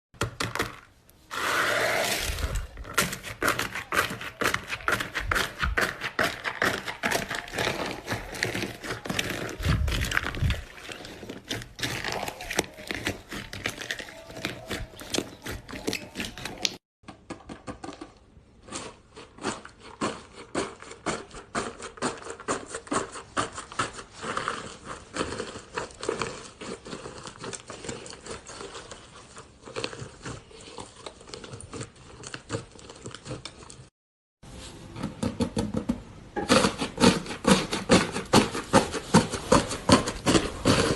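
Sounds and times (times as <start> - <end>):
slime crunching and popping: 0.4 - 16.8, 18.5 - 33.9.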